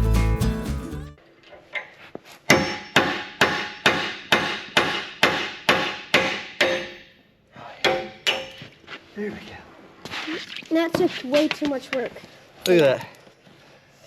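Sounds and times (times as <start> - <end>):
music: 0.0 - 1.2
hammer clanging on steel: 2.5 - 7.1, 7.8 - 8.6.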